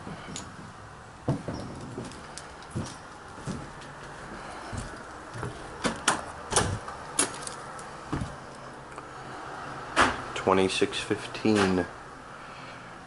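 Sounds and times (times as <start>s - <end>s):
sharp knocks and thuds: 0.0s - 3.8s, 8.1s - 8.4s.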